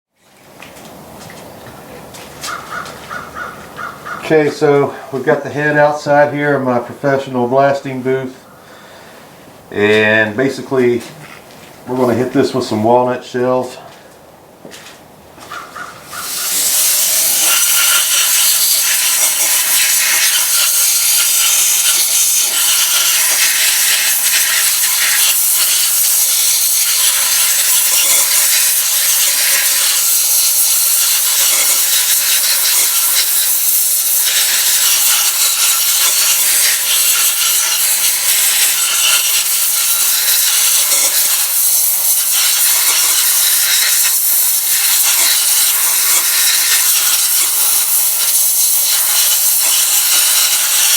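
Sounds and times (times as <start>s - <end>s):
blast gun hissing: 16.0s - 35.5s.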